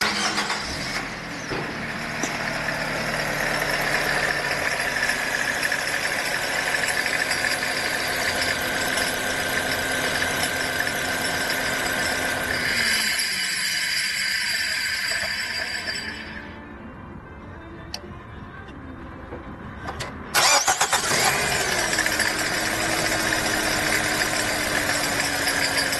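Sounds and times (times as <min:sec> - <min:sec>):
car engine humming: 0:00.1 - 0:12.7
alternator pulley whirring: 0:20.4 - 0:25.9.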